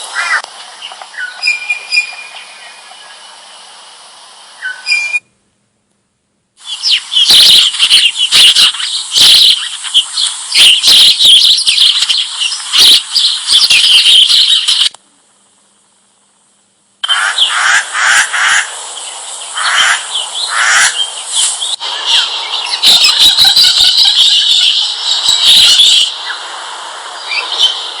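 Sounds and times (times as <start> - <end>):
birds chirping and chattering: 0.0 - 3.3, 6.6 - 14.9, 17.0 - 28.0.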